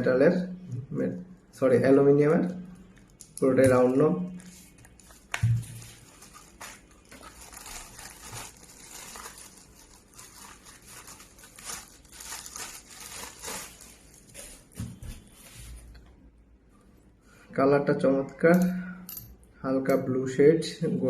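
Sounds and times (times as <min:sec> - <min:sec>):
plastic packaging crinkling: 0:04.3 - 0:15.0.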